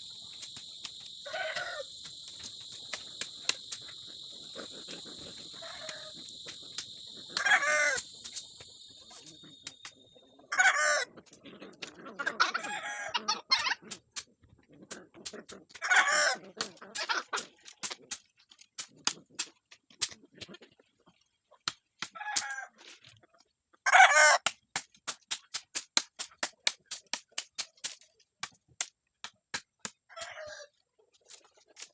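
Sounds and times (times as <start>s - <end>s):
hens clucking: 1.0s - 18.0s
rooster crowing: 10.5s - 11.1s, 12.4s - 13.5s, 23.9s - 24.4s.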